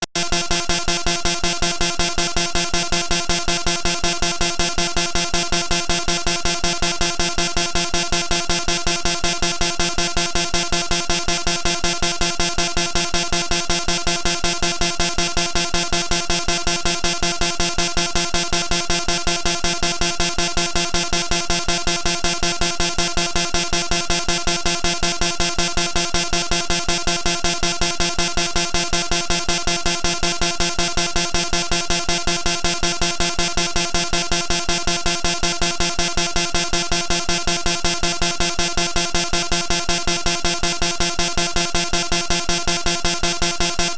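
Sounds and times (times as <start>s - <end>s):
pulsing buzzing synthesizer drone: 0.2s - 5.4s.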